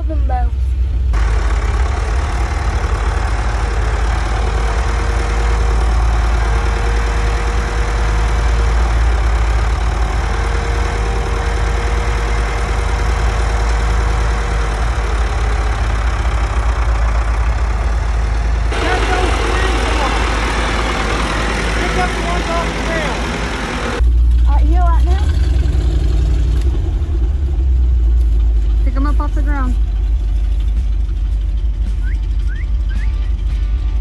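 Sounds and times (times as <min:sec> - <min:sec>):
vehicle engine rumbling: 0:00.0 - 0:34.0.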